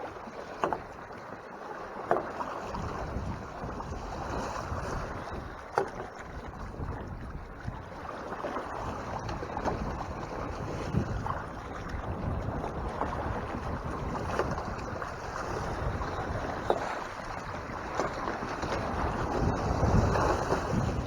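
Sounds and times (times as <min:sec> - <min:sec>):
water rushing along hull: 0:00.0 - 0:21.0
wind buffeting microphone: 0:02.6 - 0:21.0.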